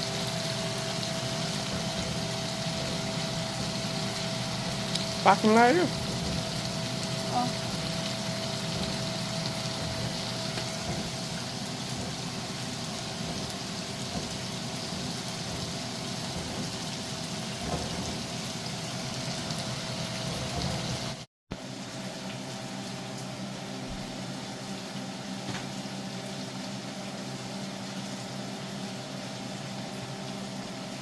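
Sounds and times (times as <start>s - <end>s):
curry sizzling in a pan: 0.0s - 23.2s.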